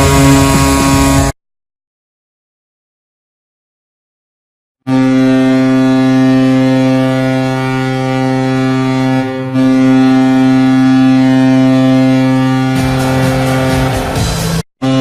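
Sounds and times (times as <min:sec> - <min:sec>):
low air horn blast: 0:00.0 - 0:01.4, 0:04.8 - 0:15.0.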